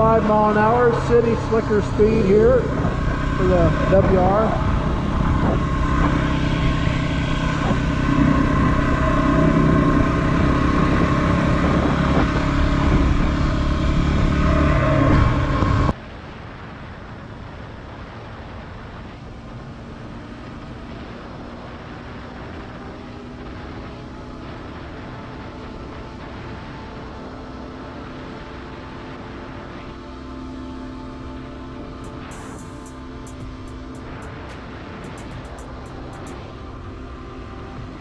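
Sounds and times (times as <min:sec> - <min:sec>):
motorcycle engine running: 0:00.0 - 0:15.9, 0:18.2 - 0:38.0
steady background hum: 0:21.7 - 0:38.0.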